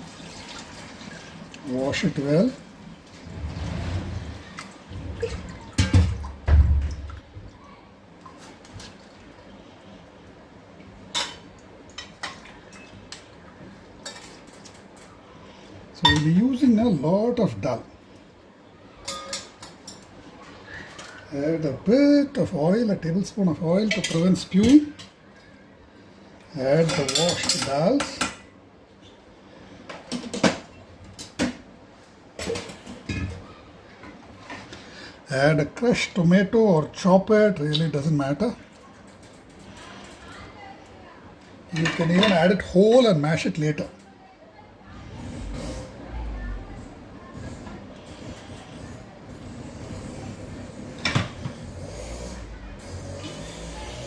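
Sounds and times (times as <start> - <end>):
kitchen vessels knocking and clinking: 5.2 - 7.1, 16.0 - 16.5, 19.0 - 20.1, 23.9 - 25.0, 26.8 - 28.4, 41.8 - 42.7.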